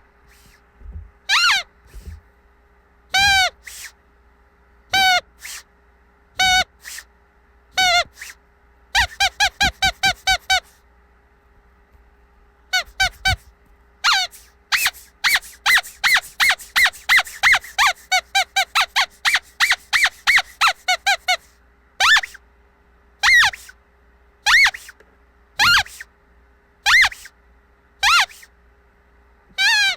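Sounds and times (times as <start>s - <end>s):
squeaky dog toy squeaks: 1.3s - 1.7s, 3.1s - 3.9s, 4.9s - 5.6s, 6.4s - 7.1s, 7.8s - 8.4s, 9.0s - 10.8s, 12.7s - 13.4s, 14.0s - 22.4s, 23.2s - 23.8s, 24.4s - 25.0s, 25.6s - 26.1s, 26.8s - 27.3s, 28.0s - 28.5s, 29.5s - 29.9s.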